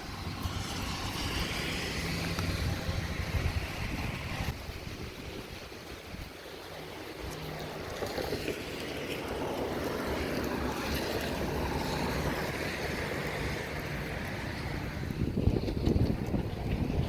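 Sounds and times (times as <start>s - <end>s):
gusty wind rushing: 0.0s - 6.4s, 11.5s - 17.0s.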